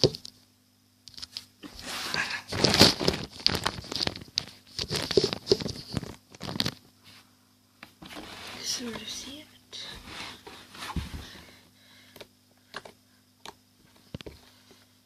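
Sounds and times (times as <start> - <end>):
slime crinkling and crackling: 2.4 - 6.8.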